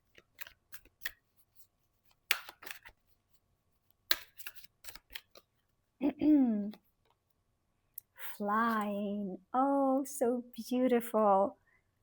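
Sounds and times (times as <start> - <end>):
playing cards being shuffled: 0.0 - 3.2, 4.0 - 5.6.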